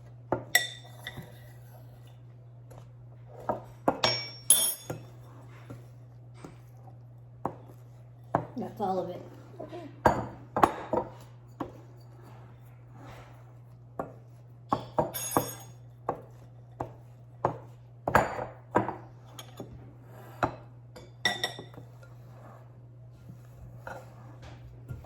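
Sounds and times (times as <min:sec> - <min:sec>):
kitchen utensils knocking and clinking: 0:03.5 - 0:05.2, 0:14.7 - 0:15.8.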